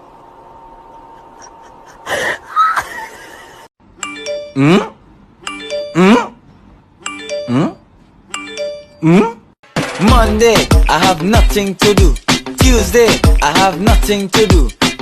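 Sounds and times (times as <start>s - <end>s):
electronic music loop: 9.8s - 15.0s.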